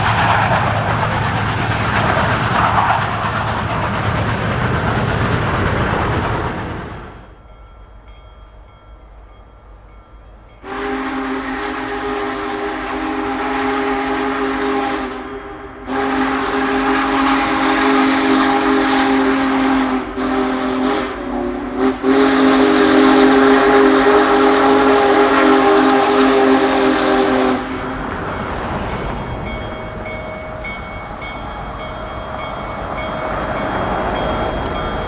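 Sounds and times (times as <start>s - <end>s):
steam whistle blowing: 10.6s - 31.4s.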